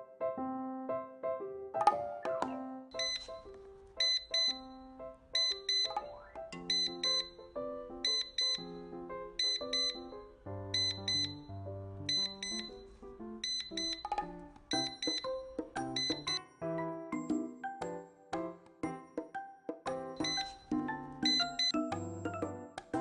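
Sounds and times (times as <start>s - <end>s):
keyboard music: 0.0s - 23.0s
alarm clock beeping: 3.0s - 16.5s, 20.1s - 22.3s.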